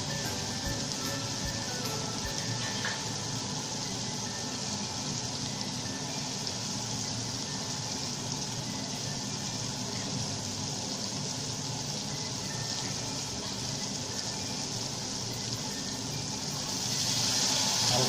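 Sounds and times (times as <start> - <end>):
masala sizzling in hot oil: 0.0 - 18.0.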